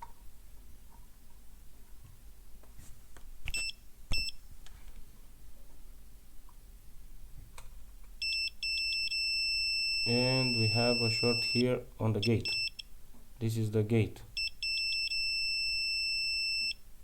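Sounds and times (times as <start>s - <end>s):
multimeter beeps: 3.5s - 4.4s, 8.2s - 12.9s, 14.4s - 16.8s
steady multimeter tone: 8.2s - 12.9s, 14.4s - 16.8s.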